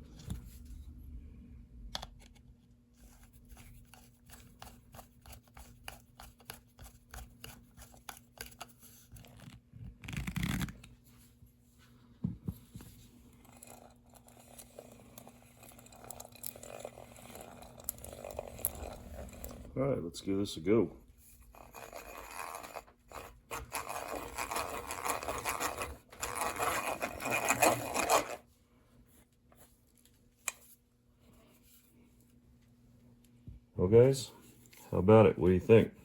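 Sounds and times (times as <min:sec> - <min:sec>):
soft scraping and rubbing: 0:10.2 - 0:19.8, 0:20.7 - 0:32.8.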